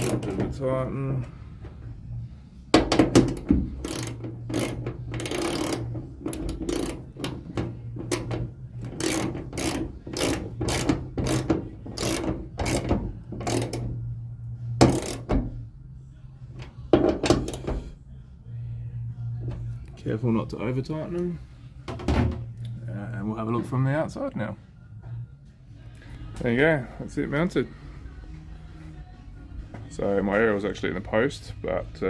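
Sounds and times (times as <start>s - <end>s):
socket ratchet clicking: 3.2s - 7.4s, 8.0s - 13.9s, 14.8s - 15.3s.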